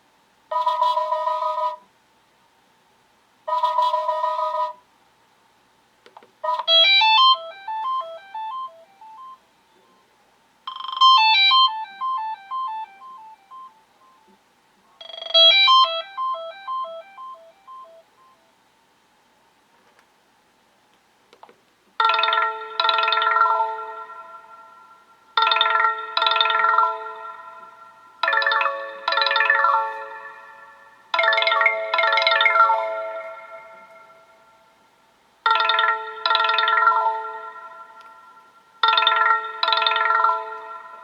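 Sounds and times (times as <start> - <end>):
cascading electronic ringtone melody: 0.5 - 1.8, 3.5 - 4.8, 6.4 - 9.4, 10.7 - 14.3, 15.0 - 18.4, 22.0 - 34.8, 35.5 - 41.0
electronic chord ringtone: 0.5 - 1.8, 3.5 - 4.8, 6.4 - 9.4, 10.7 - 14.3, 15.0 - 18.2, 22.0 - 34.9, 35.5 - 41.0.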